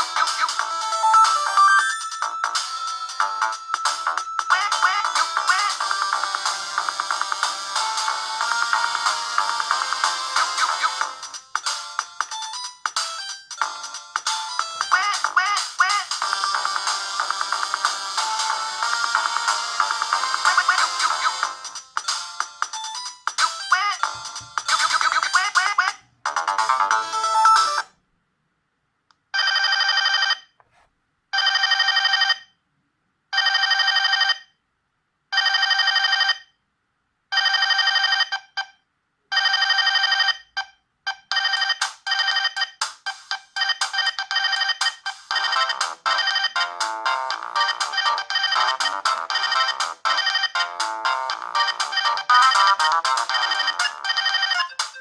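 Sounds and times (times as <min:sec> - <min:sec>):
fast ringtone tune: 0:00.0 - 0:27.9, 0:41.1 - 0:55.0
phone ringtone melody: 0:00.0 - 0:27.9, 0:29.4 - 0:30.4, 0:31.4 - 0:32.5, 0:33.4 - 0:34.5, 0:35.4 - 0:36.5, 0:37.4 - 0:38.4, 0:39.3 - 0:40.6, 0:41.3 - 0:55.0
repeating phone ring bursts: 0:41.3 - 0:50.8, 0:51.4 - 0:55.0.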